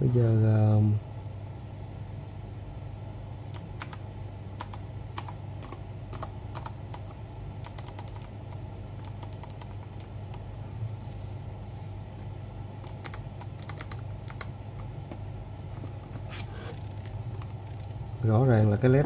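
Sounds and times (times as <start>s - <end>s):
steady low hum: 0.0s - 19.0s
mechanical keyboard clicks: 3.5s - 4.0s, 4.6s - 10.4s, 12.8s - 14.5s.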